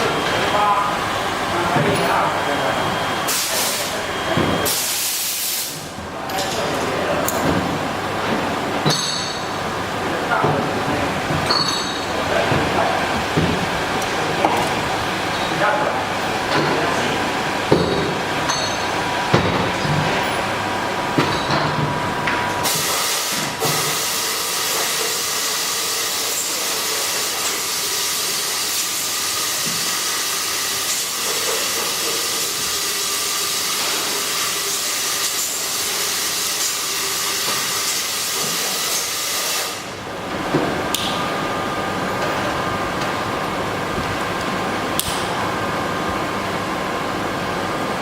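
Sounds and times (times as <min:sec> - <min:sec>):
loud steady hiss: 0:04.6 - 0:05.9.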